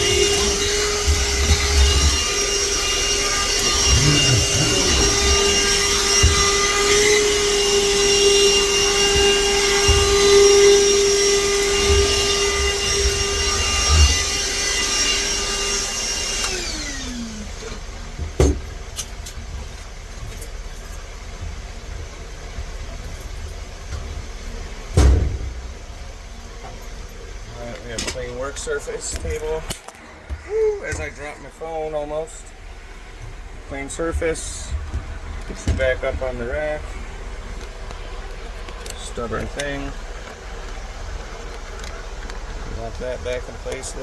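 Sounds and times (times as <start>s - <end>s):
motor winding down whine: 0.0s - 18.3s
shop vacuum running: 0.0s - 44.0s.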